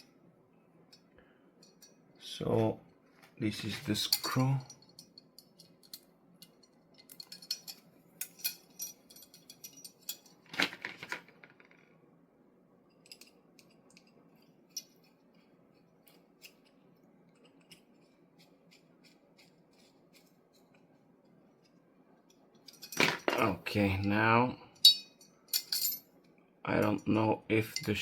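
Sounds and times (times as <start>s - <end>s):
metal parts clicking and scraping: 0.9s - 2.0s, 3.6s - 11.8s, 12.9s - 21.0s, 21.6s - 24.1s, 24.8s - 26.0s.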